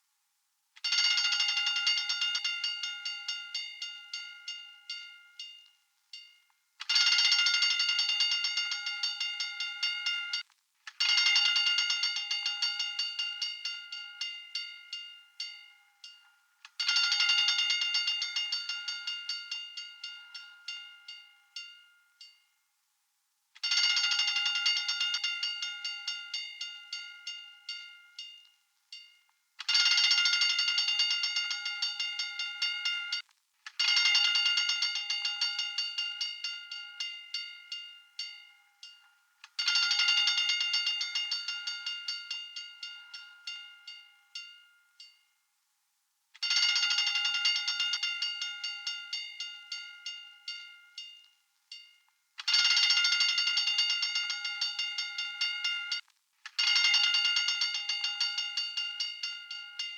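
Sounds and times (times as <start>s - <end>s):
fire alarm bell ringing: 0.9s - 10.4s, 23.6s - 33.2s, 33.8s - 45.2s, 46.4s - 56.0s, 56.6s - 59.9s.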